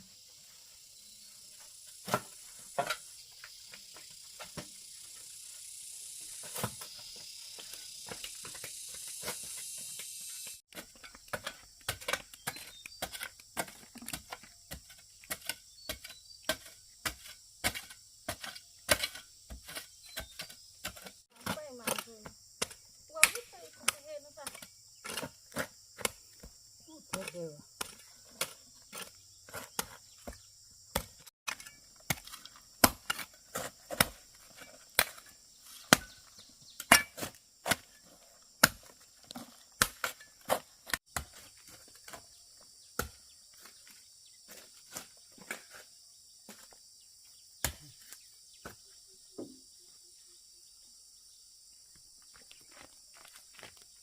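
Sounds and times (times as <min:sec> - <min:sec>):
insects droning: 0:00.0 - 0:54.0
hand tool striking wood: 0:07.6 - 0:26.5, 0:27.1 - 0:42.3.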